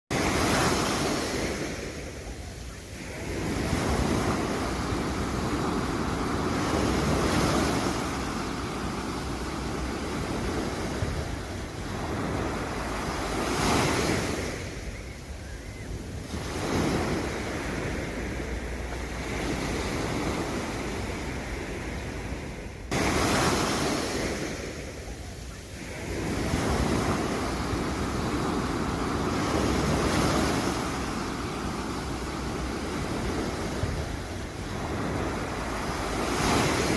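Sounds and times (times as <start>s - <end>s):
sea waves breaking on beach: 0.1s - 36.9s
wind on microphone: 0.1s - 36.9s.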